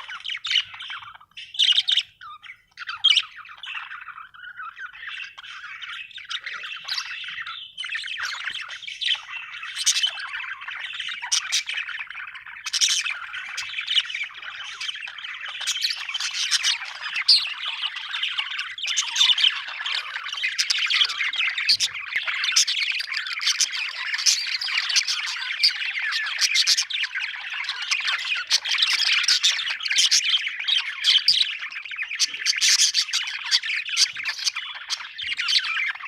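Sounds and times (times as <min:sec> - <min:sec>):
budgerigars chattering: 0:00.0 - 0:36.0
sharp bird chirps and squawks: 0:00.0 - 0:36.0.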